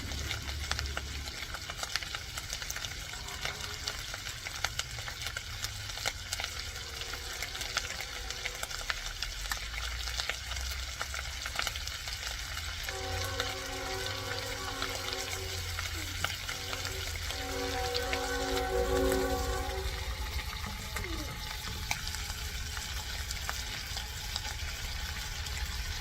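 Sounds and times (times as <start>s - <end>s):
fish sizzling in hot oil: 0.0s - 26.0s
faint humming tone: 12.8s - 23.7s.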